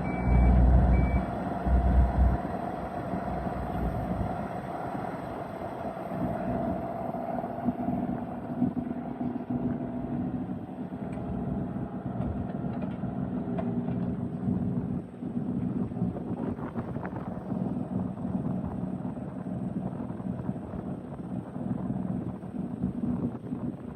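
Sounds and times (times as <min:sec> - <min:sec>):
high whine: 0:00.0 - 0:12.4
diesel engine running: 0:00.0 - 0:23.9.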